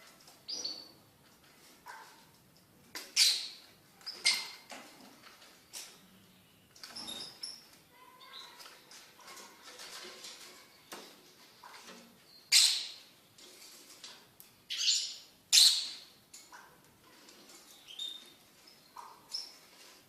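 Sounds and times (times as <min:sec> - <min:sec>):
lovebirds chirping: 0:05.7 - 0:09.4, 0:14.7 - 0:16.2, 0:17.5 - 0:19.7.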